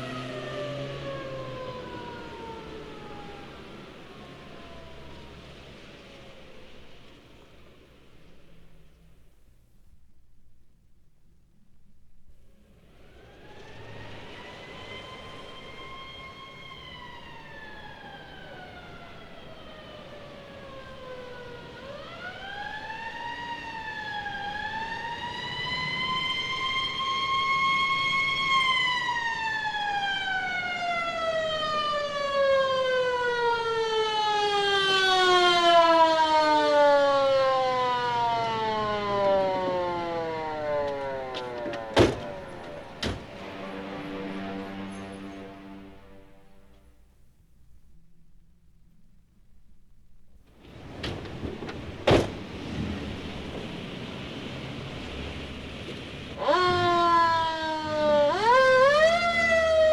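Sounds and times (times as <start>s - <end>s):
siren wailing: 0.0s - 6.9s, 13.0s - 46.9s, 50.8s - 59.9s.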